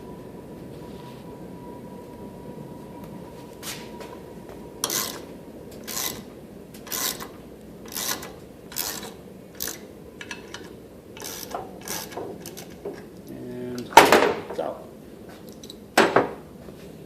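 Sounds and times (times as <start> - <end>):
ratchet wrench rasping: 4.8 - 5.2, 5.8 - 6.2, 6.8 - 12.8.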